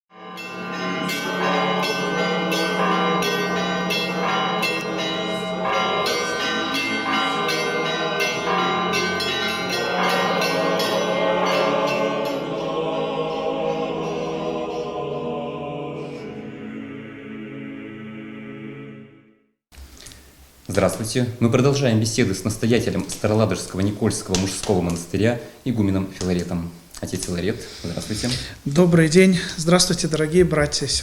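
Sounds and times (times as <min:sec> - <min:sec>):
church bells pealing: 0:00.1 - 0:15.0.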